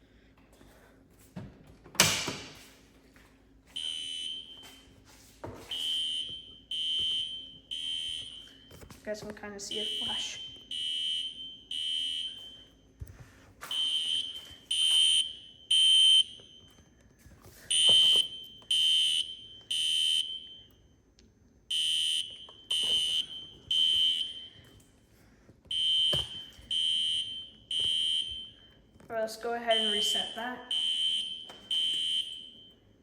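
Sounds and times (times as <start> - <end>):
fire alarm horn blasts: 3.7 - 4.9, 5.7 - 8.8, 9.6 - 12.9, 13.7 - 16.8, 17.7 - 20.9, 21.7 - 24.7, 25.7 - 28.8, 29.6 - 33.0.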